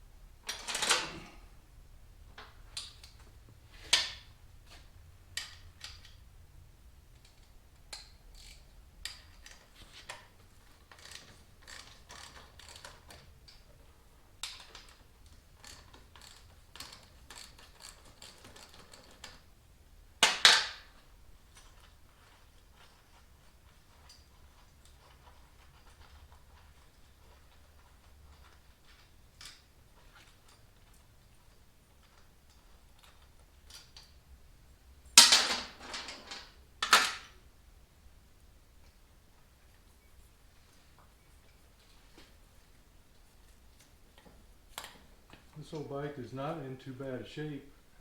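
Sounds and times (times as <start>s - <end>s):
hand tools clicking and knocking: 0.5s - 1.4s.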